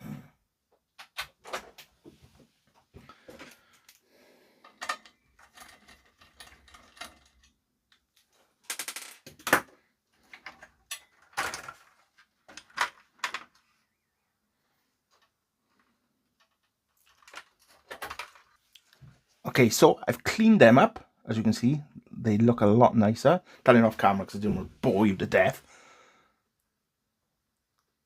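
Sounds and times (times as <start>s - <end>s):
clicks and rattles of connectors: 0.7s - 1.9s, 3.3s - 4.0s, 4.6s - 13.7s, 15.1s - 19.0s.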